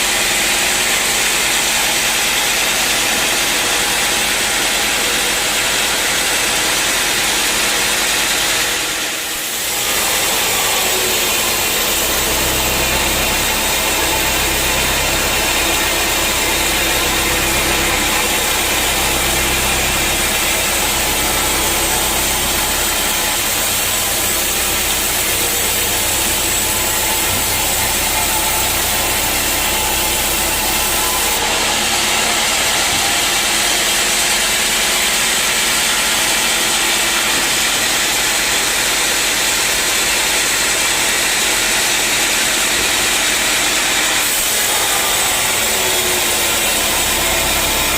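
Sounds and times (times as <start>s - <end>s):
bandsaw cutting wood: 0.0s - 47.9s
deep drive hum: 9.5s - 32.8s.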